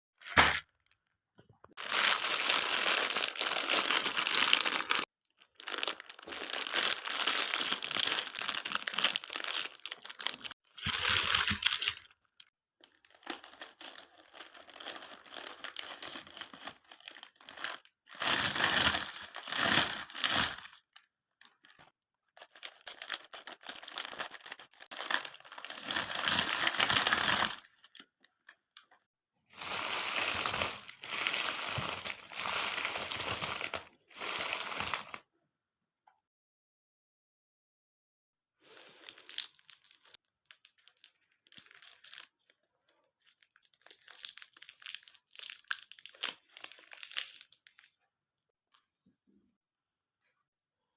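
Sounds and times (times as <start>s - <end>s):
wrappers crinkling and tearing: 1.8s - 20.9s, 21.5s - 28.1s, 29.6s - 35.2s, 39.0s - 42.5s, 43.2s - 47.9s.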